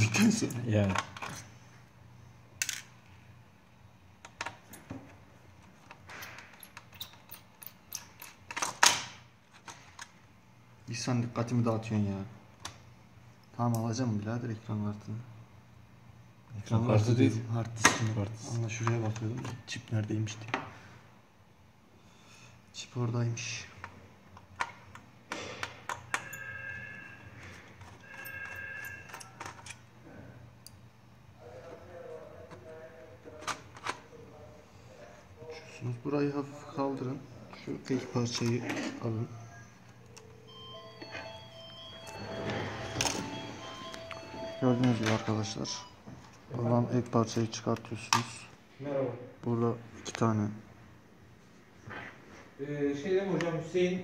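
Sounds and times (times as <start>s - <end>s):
small clicks and clinks of parts: 2.6s - 3.0s, 5.7s - 10.2s, 27.6s - 29.8s
telephone ringing: 25.9s - 29.8s, 39.0s - 46.4s.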